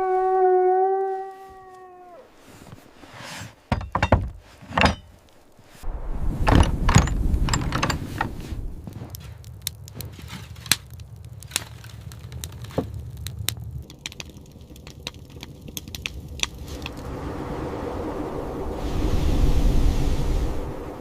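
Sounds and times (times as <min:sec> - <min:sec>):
wood fire crackling: 0:02.4 - 0:21.0
low rumble: 0:05.8 - 0:21.0.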